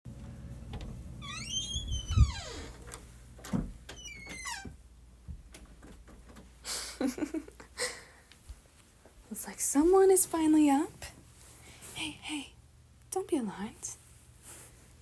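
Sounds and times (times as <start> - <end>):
door creaking on hinges: 0.7 - 4.8.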